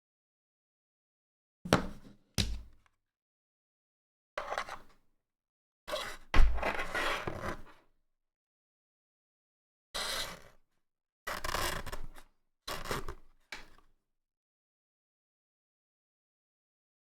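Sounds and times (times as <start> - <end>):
sharp knocks on cardboard: 1.7 - 2.8.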